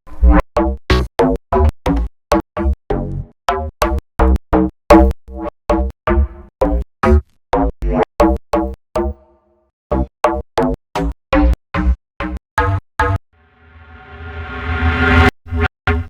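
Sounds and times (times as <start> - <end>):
rising whoosh: 13.5 - 15.7.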